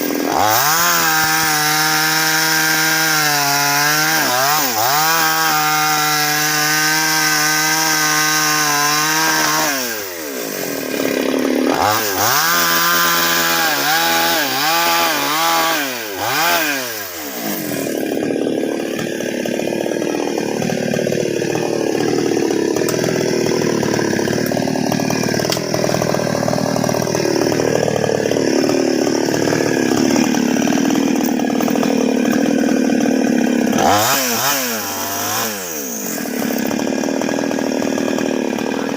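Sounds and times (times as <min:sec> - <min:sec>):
chainsaw cutting into log: 0:00.0 - 0:38.9
chainsaw revving: 0:00.0 - 0:38.9.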